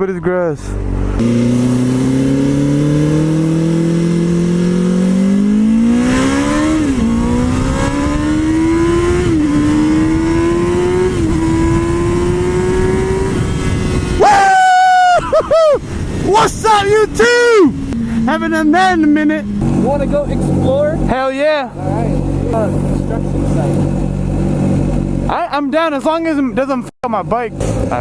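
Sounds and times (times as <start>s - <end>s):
motorcycle engine accelerating: 0.7s - 15.0s, 15.9s - 25.9s
loud high steady tone: 17.3s - 21.0s.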